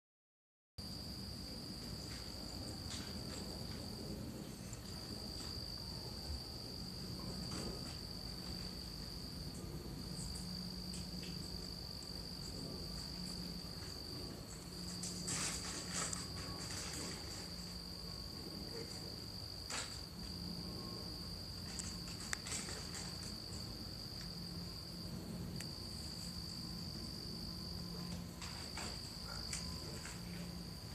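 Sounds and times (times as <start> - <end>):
shrill insect trill: 0.8 - 30.9
faint low drone: 1.1 - 19.5, 20.1 - 22.9.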